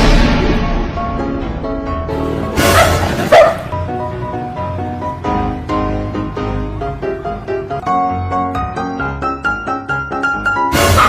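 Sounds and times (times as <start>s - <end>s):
background piano music: 0.0s - 11.0s
dog barking: 2.6s - 3.8s.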